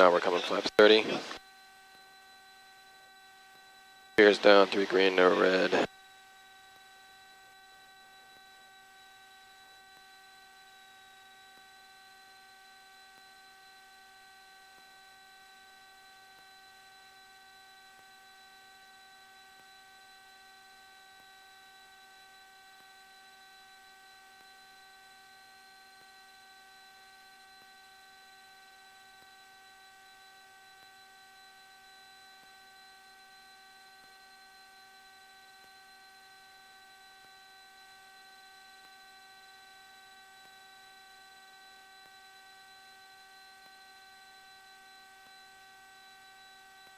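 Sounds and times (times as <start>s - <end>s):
electrical hum and whine: 0.0s - 46.9s.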